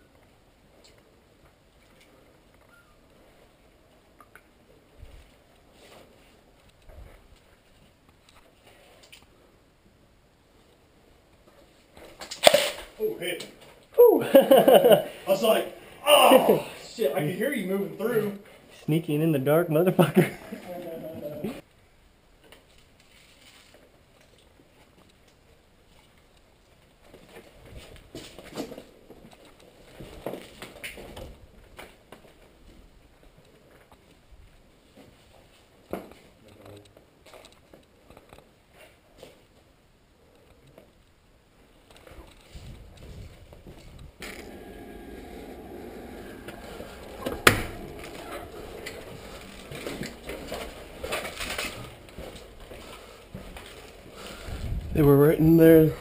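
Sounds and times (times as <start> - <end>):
footsteps: 42.6 - 55.0.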